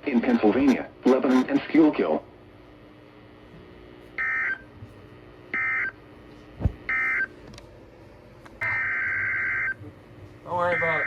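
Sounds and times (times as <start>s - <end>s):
bursts of modem-like data tones: 0.2s - 1.6s, 10.6s - 11.0s.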